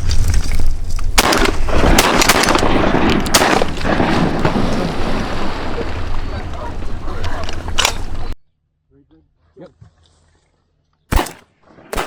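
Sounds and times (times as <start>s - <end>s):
shotgun shots echoing: 1.2s - 6.4s, 11.1s - 12.0s.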